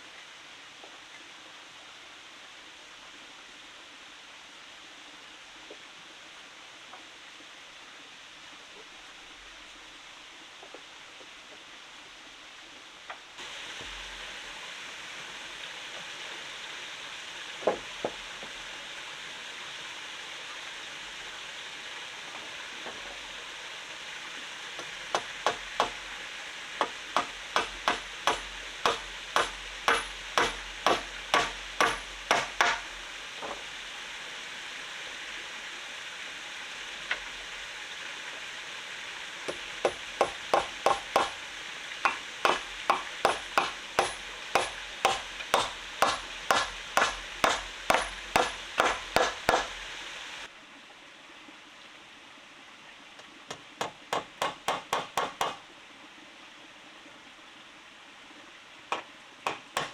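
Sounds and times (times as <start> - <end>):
stream rushing: 11.9 - 56.0, 57.8 - 59.9
tool striking hard material: 24.8 - 26.0, 26.8 - 33.6, 39.5 - 41.4, 42.0 - 49.8, 53.8 - 55.6, 58.9 - 59.9.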